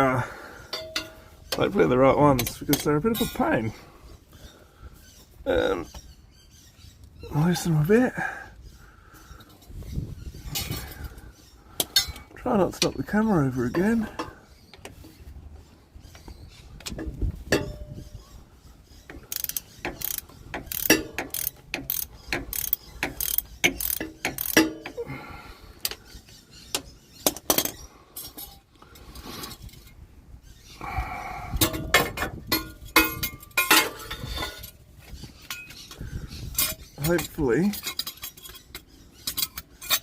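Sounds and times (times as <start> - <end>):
tools clanging against steel: 0.7 - 3.6, 10.5 - 11.0, 11.8 - 14.4, 16.8 - 18.0, 19.1 - 25.0, 26.8 - 28.7, 31.6 - 34.8, 35.4 - 40.0
socket ratchet clicking: 19.3 - 24.6.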